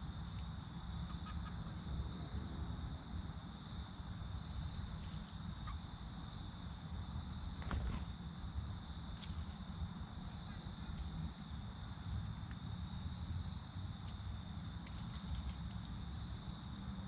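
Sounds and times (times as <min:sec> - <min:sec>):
small ticks: 0:00.2 - 0:07.6.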